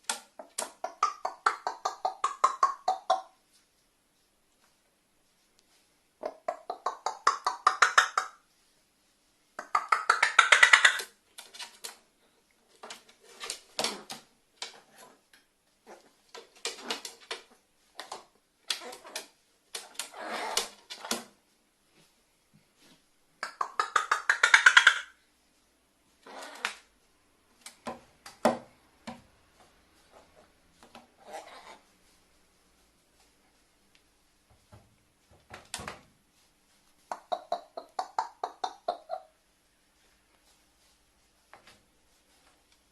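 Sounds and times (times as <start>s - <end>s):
crow clicking rattling calls: 6.5s - 8.4s, 9.6s - 11.1s, 23.4s - 25.2s.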